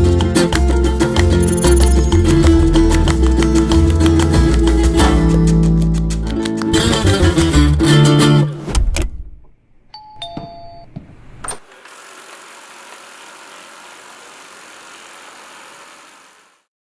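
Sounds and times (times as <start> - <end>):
guitar music: 0.0 - 8.6
two-note descending electronic chime: 1.3 - 2.9
robot vacuum whirring: 11.6 - 16.7.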